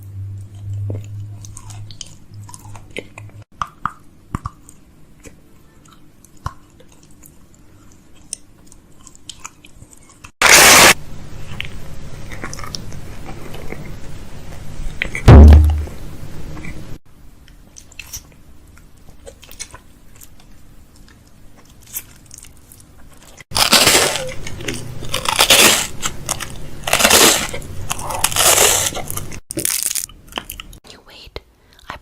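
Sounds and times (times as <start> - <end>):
packaging crunching and rustling: 21.7 - 30.8.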